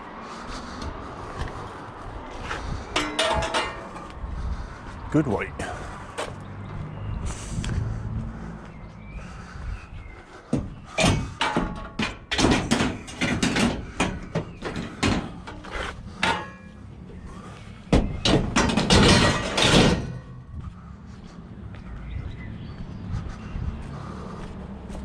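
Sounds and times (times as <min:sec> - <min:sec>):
scrap metal clanking: 0:02.5 - 0:04.2, 0:10.6 - 0:16.8, 0:18.0 - 0:20.4.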